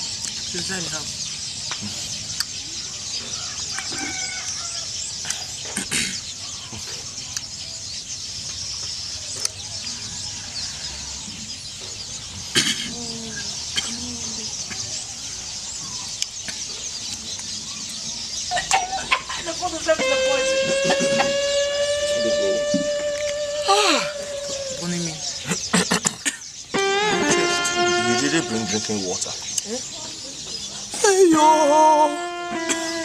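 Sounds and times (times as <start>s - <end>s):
chickens clucking: 10.8s - 33.0s
high outdoor hiss: 18.8s - 33.0s.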